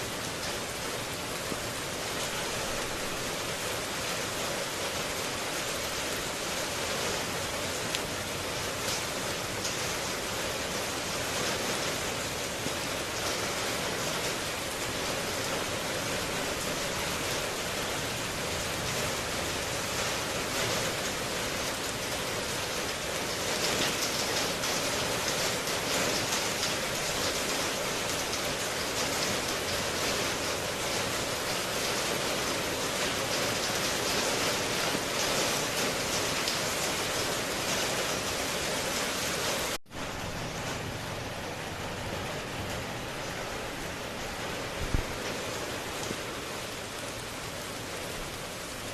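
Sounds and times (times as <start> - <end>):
heavy rain falling: 0.0 - 48.9.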